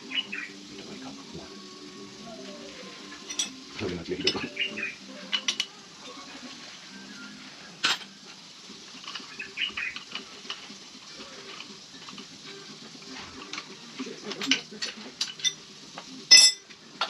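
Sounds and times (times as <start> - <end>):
metal tools clinking: 3.2 - 3.6, 16.3 - 16.6.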